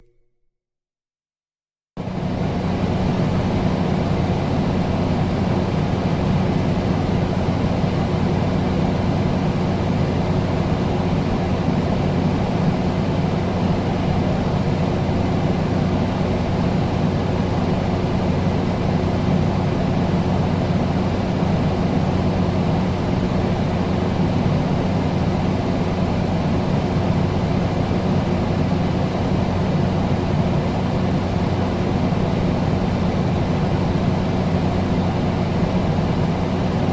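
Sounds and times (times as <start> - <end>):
air conditioner running: 2.0 - 36.9.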